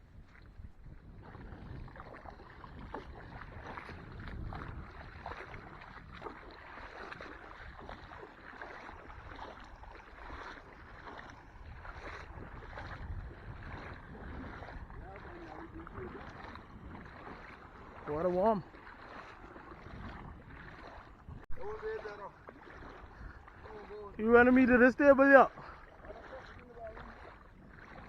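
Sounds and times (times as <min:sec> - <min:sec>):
wind rumble on microphone: 0:00.0 - 0:24.2, 0:26.0 - 0:28.0
water sloshing and splashing: 0:00.0 - 0:28.0.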